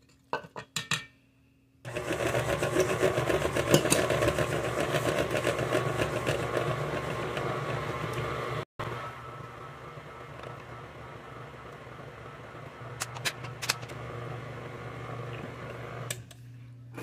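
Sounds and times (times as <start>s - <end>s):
electric mixer beating batter: 1.9s - 13.0s, 13.9s - 16.1s.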